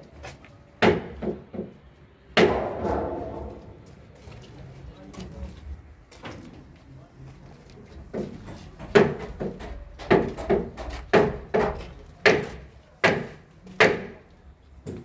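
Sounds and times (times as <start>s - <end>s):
heavy knocks: 2.4s - 3.9s.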